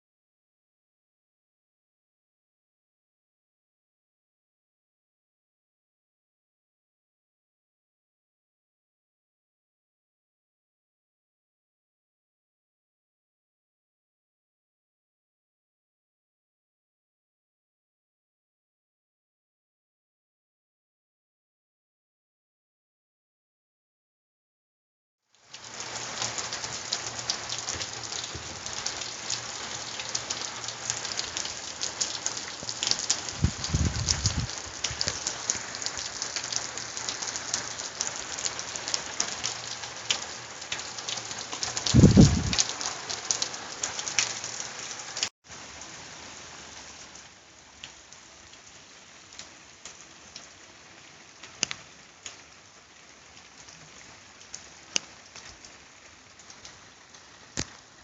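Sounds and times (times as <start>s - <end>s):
heavy rain hissing: 25.4s - 58.0s
low thunder rumble: 33.2s - 35.0s, 41.9s - 42.6s
scattered drips: 51.4s - 52.5s.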